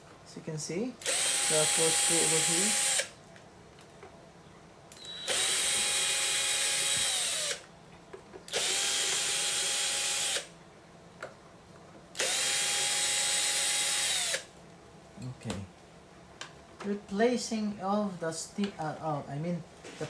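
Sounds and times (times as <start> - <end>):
electric screwdriver whining: 1.0 - 3.1, 5.0 - 7.6, 8.5 - 10.5, 12.2 - 14.5.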